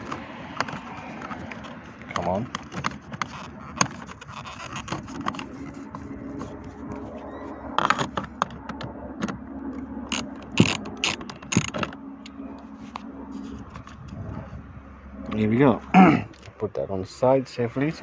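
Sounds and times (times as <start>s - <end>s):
socket ratchet clicking: 10.1s - 12.4s.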